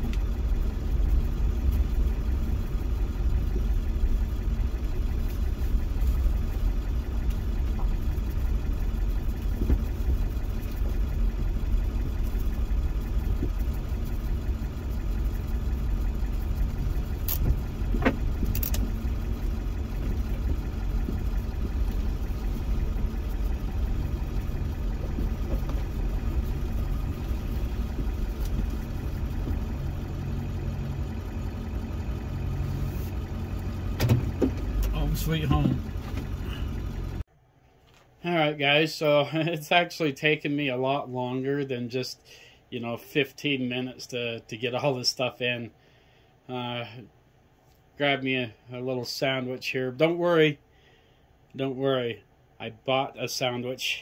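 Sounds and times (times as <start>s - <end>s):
diesel engine rumbling: 0.0s - 37.3s
sharp clicks: 17.2s - 18.9s.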